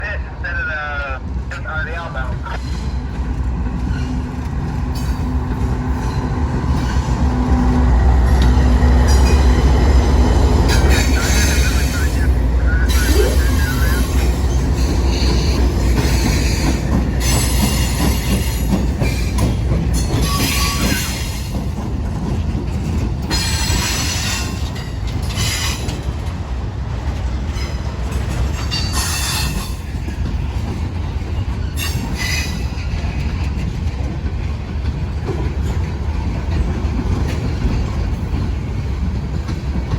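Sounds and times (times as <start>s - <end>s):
freight train rumbling past: 0.0s - 39.9s
train wheels squealing: 3.8s - 4.3s, 10.7s - 21.5s, 23.3s - 26.0s, 28.6s - 29.9s, 31.4s - 33.1s
high wheel squeal: 20.2s - 21.4s.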